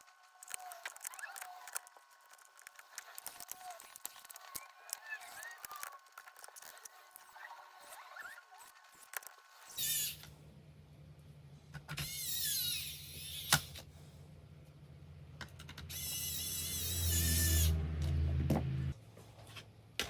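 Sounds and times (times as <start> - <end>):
small electric motor whirring: 0.0 - 10.4, 11.9 - 13.9, 15.7 - 19.0
steady low hum: 10.1 - 12.0, 13.0 - 20.0.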